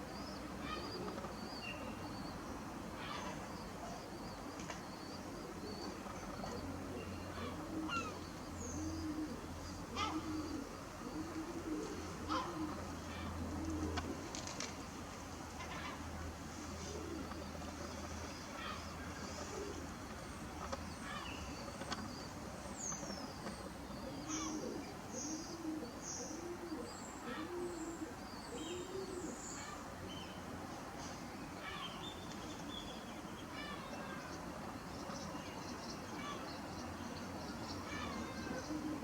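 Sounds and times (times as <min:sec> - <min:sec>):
dove cooing: 0:00.4 - 0:01.4, 0:05.2 - 0:14.8, 0:16.6 - 0:17.8, 0:18.5 - 0:20.1, 0:23.4 - 0:29.4, 0:38.0 - 0:39.0.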